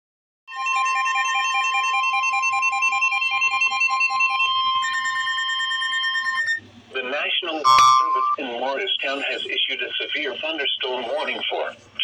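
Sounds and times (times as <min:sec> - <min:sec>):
fast electronic beeping: 0:07.7 - 0:08.4
steady warning tone: 0:07.7 - 0:08.4.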